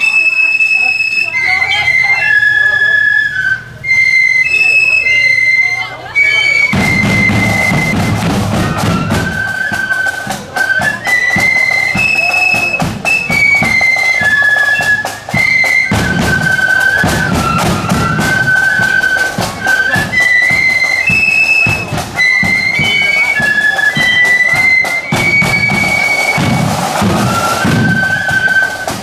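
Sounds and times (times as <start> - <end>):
flutes playing melody: 0.0 - 29.0
snare and bass drums: 6.6 - 29.0.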